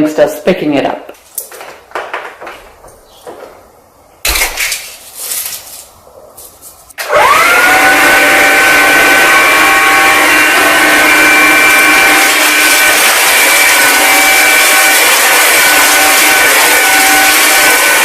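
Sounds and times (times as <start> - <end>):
vacuum cleaner motor whine: 7.0 - 18.0.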